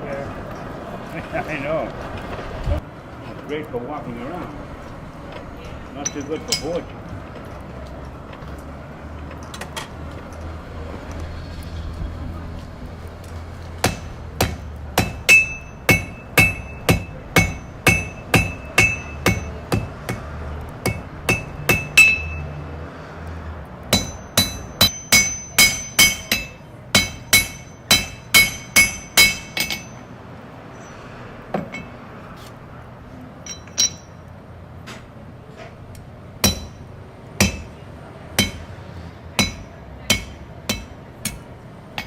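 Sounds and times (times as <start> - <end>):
hammer striking metal on anvil: 6.0 - 6.8, 13.8 - 22.6, 23.9 - 30.1, 33.4 - 34.2, 36.4 - 37.8, 38.4 - 38.7, 39.4 - 42.0.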